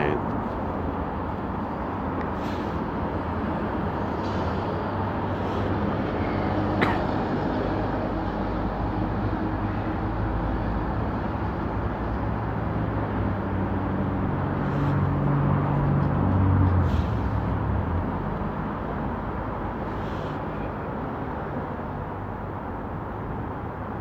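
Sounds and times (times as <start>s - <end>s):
steady traffic noise: 0.0s - 24.0s.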